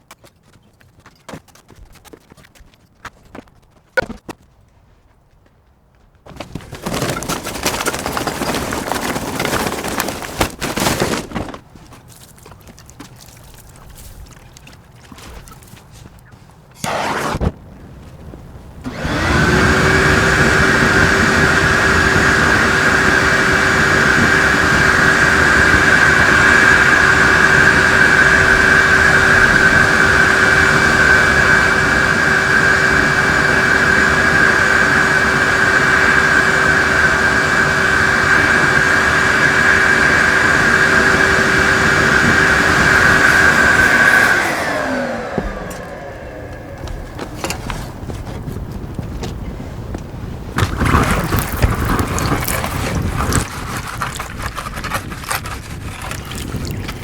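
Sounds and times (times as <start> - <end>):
loud rough workshop noise: 6.3 - 12.7, 14.4 - 17.5, 18.9 - 48.5, 50.6 - 57.0
machine motor whining: 16.7 - 17.5, 18.8 - 48.1.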